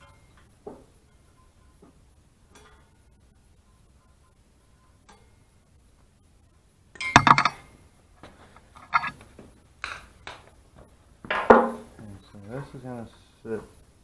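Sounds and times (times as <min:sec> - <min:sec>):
metal tools clinking and knocking: 0:07.0 - 0:07.7, 0:08.7 - 0:10.4.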